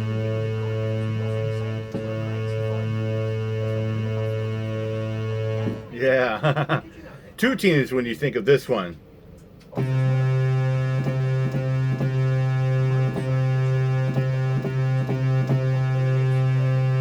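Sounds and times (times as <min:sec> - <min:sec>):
synthesizer goal horn tone: 0:00.0 - 0:05.9, 0:09.8 - 0:17.0.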